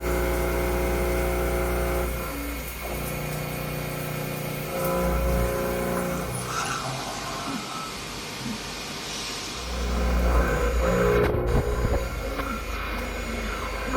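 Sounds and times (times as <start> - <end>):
motor running: 9.6 - 13.9.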